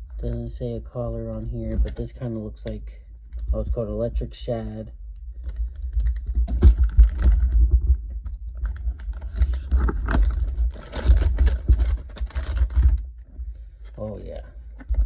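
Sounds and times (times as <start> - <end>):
dull low bumps: 5.0 - 13.7
plastic packaging crinkling: 5.3 - 13.1.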